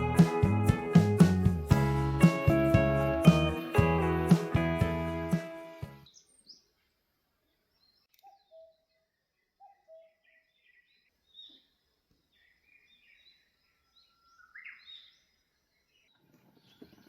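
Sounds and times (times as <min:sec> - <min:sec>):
birds chirping and trilling: 0:06.0 - 0:17.0.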